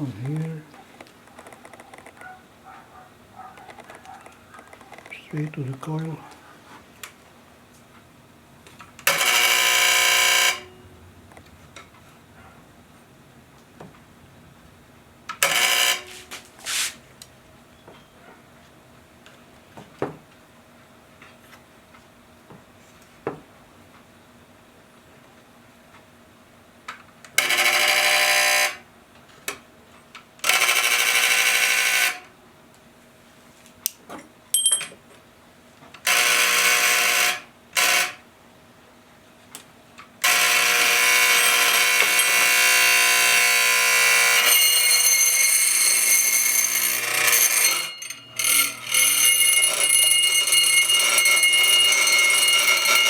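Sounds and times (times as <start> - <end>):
electric doorbell buzzing: 9.1 - 10.9, 15.4 - 16.4, 27.4 - 28.9, 30.4 - 32.3, 36.0 - 38.2, 40.2 - 53.0.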